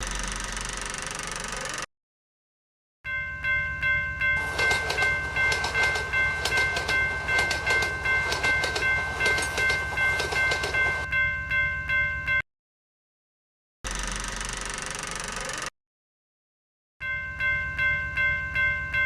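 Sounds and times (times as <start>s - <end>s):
railroad crossing bell ringing: 3.0s - 12.4s, 17.0s - 19.0s
train wheels clicking on rails: 4.4s - 11.1s
train rumble: 4.4s - 11.2s.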